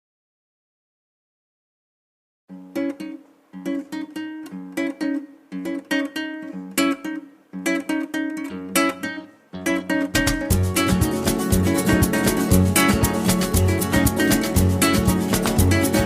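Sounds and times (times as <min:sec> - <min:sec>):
acoustic guitar picking: 0:02.5 - 0:16.0
other instruments playing: 0:09.7 - 0:16.0.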